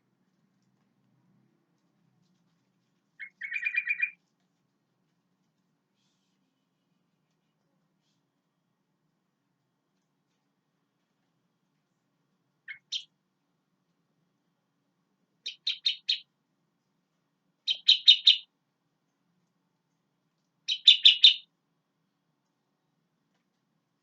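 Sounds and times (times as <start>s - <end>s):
bulbul singing: 3.2s - 4.2s, 12.7s - 13.1s, 15.4s - 16.3s, 17.7s - 18.5s, 20.7s - 21.5s.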